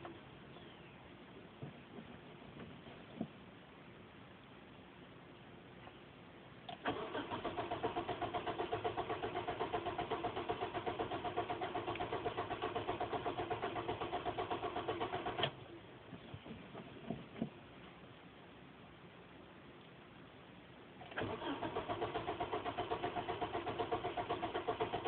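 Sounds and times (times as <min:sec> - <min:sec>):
car engine cranking: 0:06.7 - 0:15.6, 0:21.0 - 0:25.0.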